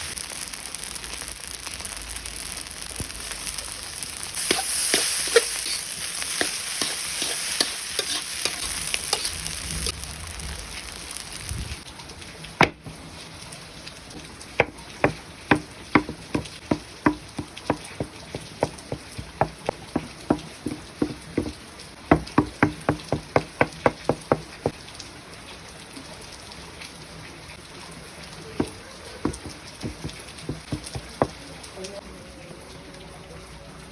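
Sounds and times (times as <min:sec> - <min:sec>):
food sizzling in a frying pan: 0:00.0 - 0:25.0.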